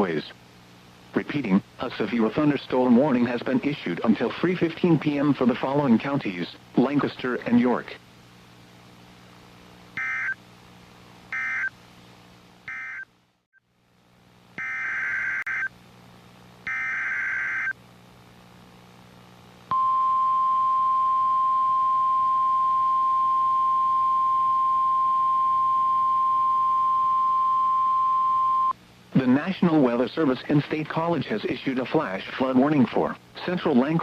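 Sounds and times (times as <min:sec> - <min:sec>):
digital data bursts: 0:10.0 - 0:10.4, 0:14.6 - 0:15.7, 0:16.7 - 0:17.8
steady warning alarm tone: 0:10.0 - 0:10.4, 0:11.3 - 0:11.7, 0:12.7 - 0:13.0, 0:14.6 - 0:15.7, 0:16.7 - 0:17.8.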